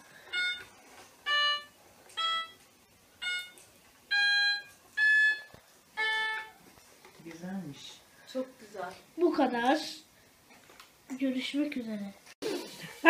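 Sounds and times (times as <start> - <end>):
toy keyboard beeping notes: 0.2 - 2.6, 3.2 - 6.6.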